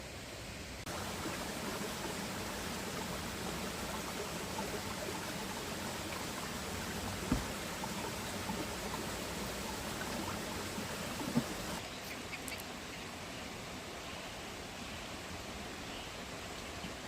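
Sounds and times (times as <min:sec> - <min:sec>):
stream water running: 0:00.0 - 0:17.0
short low thump: 0:07.1 - 0:07.8.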